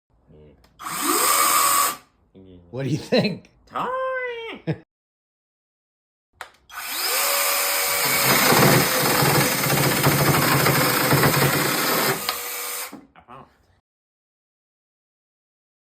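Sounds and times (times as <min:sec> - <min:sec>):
electric chainsaw whining: 0:00.8 - 0:02.0, 0:06.7 - 0:13.0.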